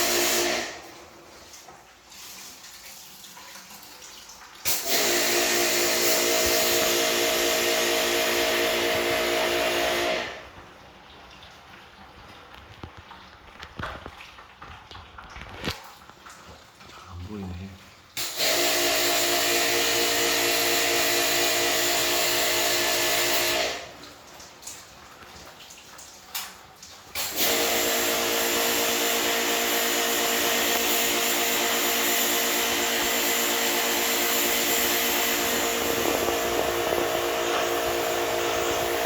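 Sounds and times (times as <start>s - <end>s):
electric motor humming: 30.4s - 39.0s.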